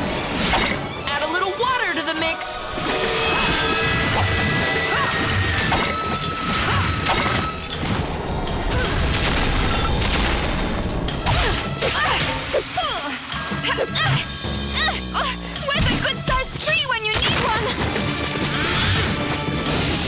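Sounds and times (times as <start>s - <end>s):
cartoon action music: 0.0s - 20.0s
crashing and booming effects: 2.7s - 11.7s.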